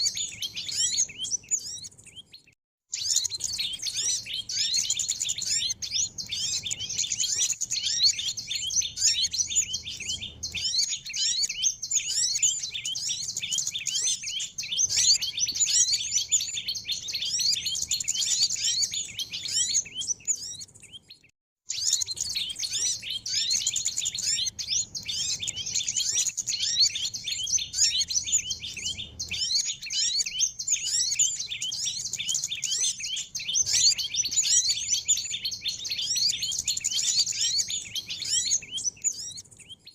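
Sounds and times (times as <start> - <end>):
many small birds chirping: 0.0 - 39.9.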